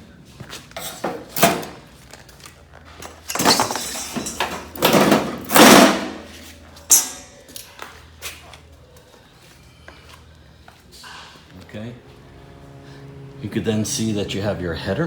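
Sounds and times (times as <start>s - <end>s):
metal door frame parts clanking: 3.0s - 6.3s
metal scraping and rustling: 3.0s - 7.2s.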